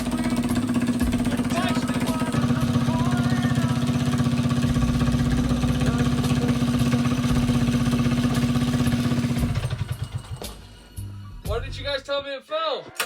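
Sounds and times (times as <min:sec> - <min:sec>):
small gasoline engine idling: 0:00.0 - 0:10.5.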